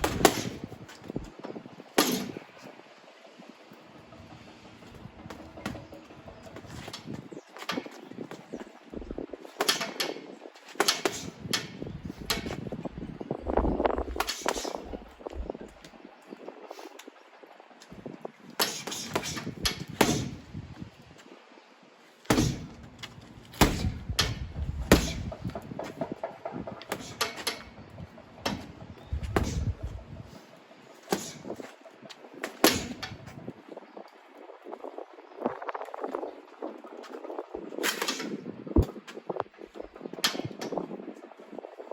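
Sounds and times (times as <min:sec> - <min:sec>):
gloved punches on punch bag: 0:18.6 - 0:20.4, 0:22.3 - 0:22.8, 0:23.6 - 0:25.4, 0:32.6 - 0:33.1.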